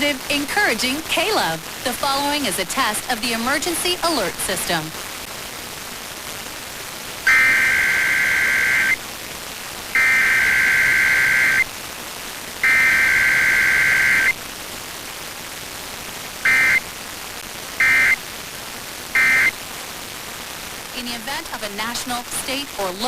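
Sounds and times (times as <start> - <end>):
radio static hiss: 0.0 - 23.0
buzzing digital data bursts: 7.2 - 9.0, 9.9 - 11.7, 12.6 - 14.4, 16.4 - 16.9, 17.8 - 18.3, 19.1 - 19.6.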